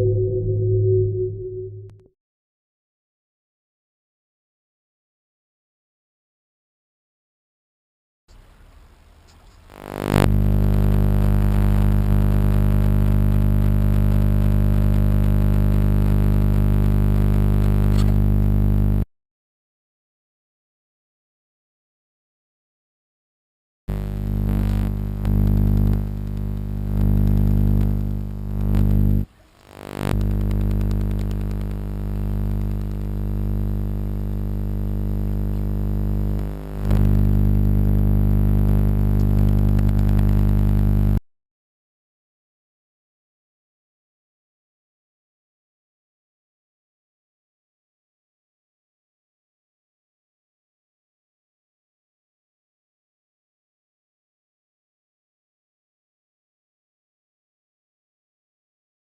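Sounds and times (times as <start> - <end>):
loud electrical hum: 9.7 - 18.8, 23.9 - 41.2.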